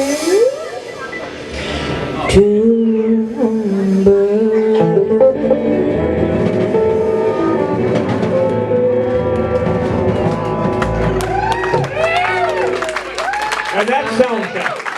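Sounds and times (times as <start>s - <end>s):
guitar: 0.0s - 13.8s
live band playing: 0.0s - 14.6s
drum kit: 5.0s - 13.7s.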